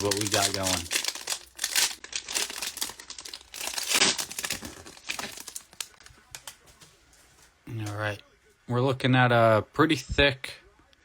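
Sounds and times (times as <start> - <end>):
wrapper crinkling and tearing: 0.0 - 6.6.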